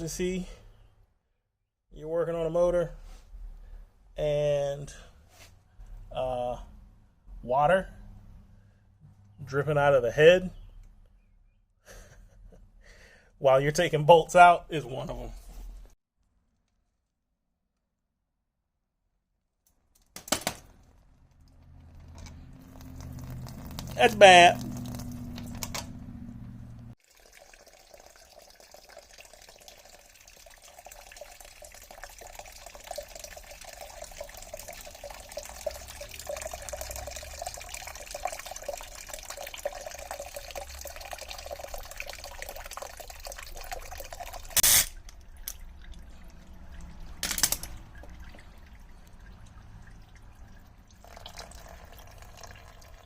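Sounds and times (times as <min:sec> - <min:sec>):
water trickling and dripping: 0:20.8 - 0:53.0.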